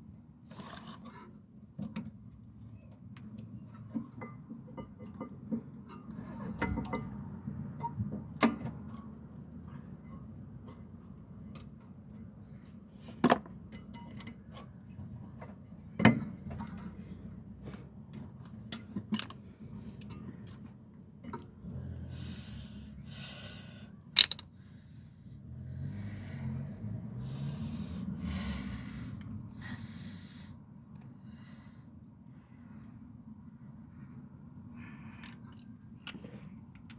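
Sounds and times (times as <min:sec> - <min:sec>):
low steady hum: 0:00.0 - 0:36.9
metal tools clinking and knocking: 0:03.7 - 0:07.2, 0:12.7 - 0:14.8, 0:18.7 - 0:20.6, 0:24.1 - 0:24.5.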